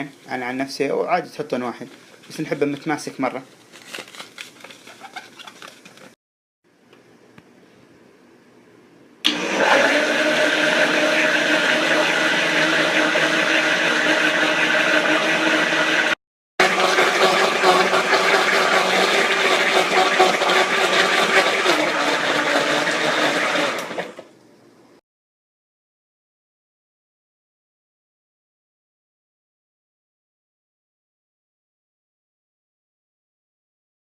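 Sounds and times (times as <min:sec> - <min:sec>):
electric mixer motor running: 0:09.3 - 0:24.2.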